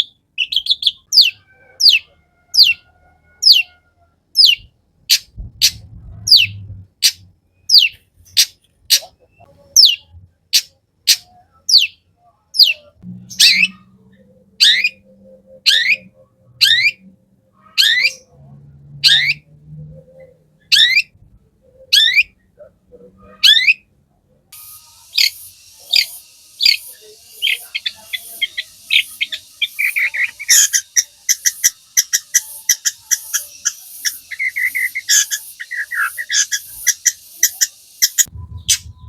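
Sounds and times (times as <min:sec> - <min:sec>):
shrike whistled calls: 0:14.5 - 0:18.3, 0:24.6 - 0:39.0.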